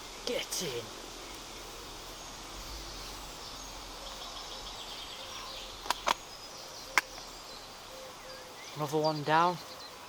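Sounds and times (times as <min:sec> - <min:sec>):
outdoor background noise: 0:00.0 - 0:10.0
songbird trilling: 0:00.3 - 0:10.0
sharp clicks: 0:05.8 - 0:06.2.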